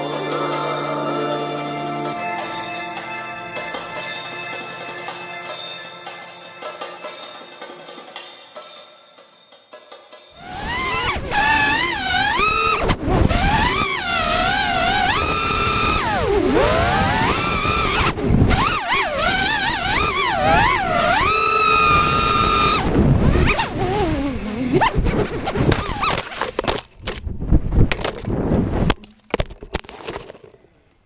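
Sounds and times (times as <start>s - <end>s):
drone motors whining: 10.4s - 26.7s.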